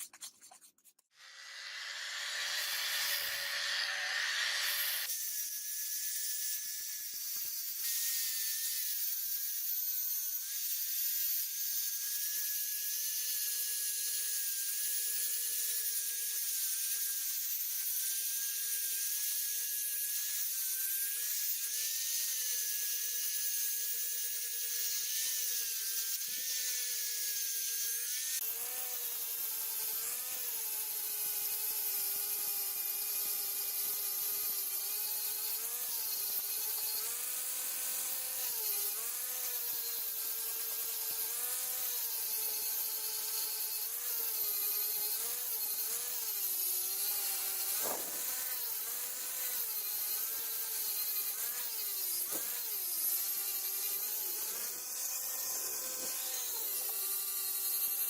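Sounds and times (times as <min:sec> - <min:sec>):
abrasive grinding metal: 0:01.2 - 0:05.1
power tool motor whine: 0:01.2 - 0:58.0.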